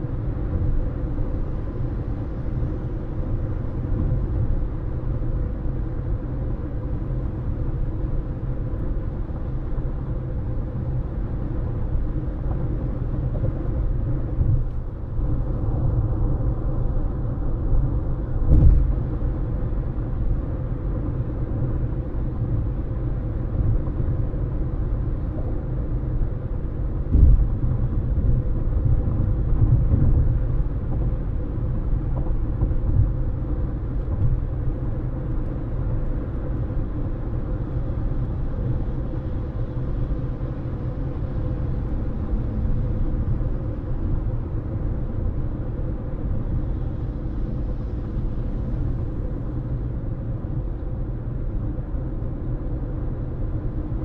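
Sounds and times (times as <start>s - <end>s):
car road rumble: 0.0s - 54.0s
brief thump: 18.5s - 19.0s.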